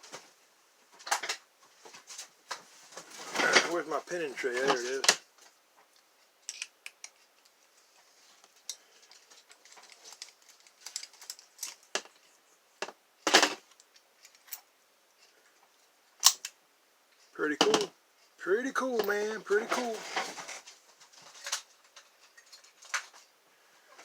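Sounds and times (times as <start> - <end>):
small parts clinking: 6.4 - 7.5, 8.6 - 12.3.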